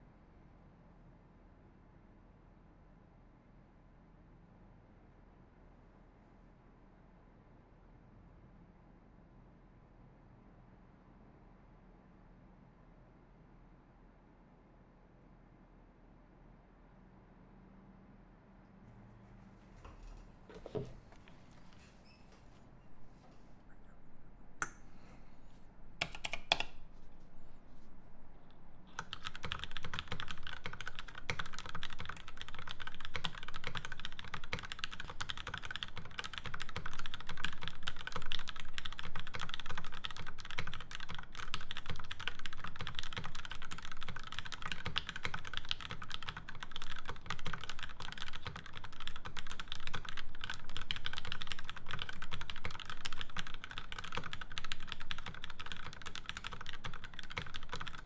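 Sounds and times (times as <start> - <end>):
mechanical keyboard typing: 25.9 - 27.3, 28.4 - 58.0.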